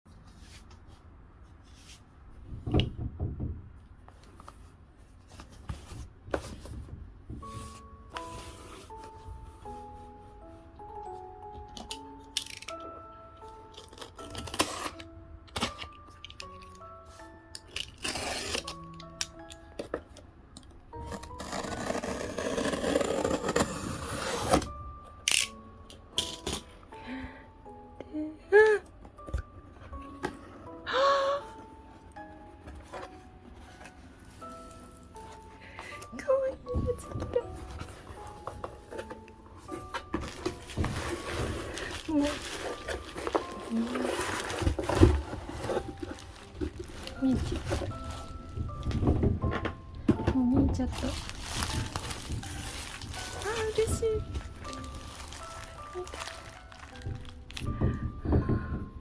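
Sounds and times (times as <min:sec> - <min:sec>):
soft background music: 0:00.1 - 0:59.0
rustling of album package: 0:21.0 - 0:24.8, 0:36.8 - 0:58.2.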